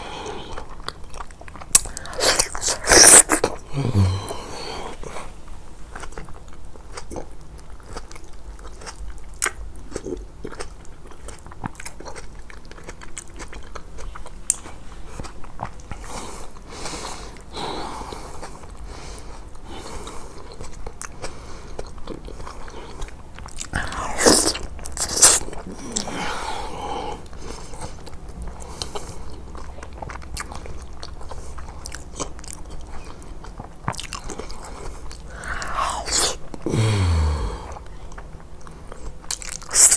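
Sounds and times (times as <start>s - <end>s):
biting and chewing: 0.5s - 3.6s, 27.3s - 39.9s.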